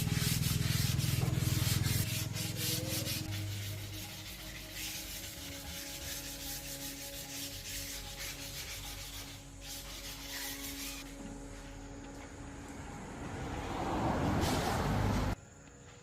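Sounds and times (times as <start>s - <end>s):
sanding scratching: 0.0s - 11.2s.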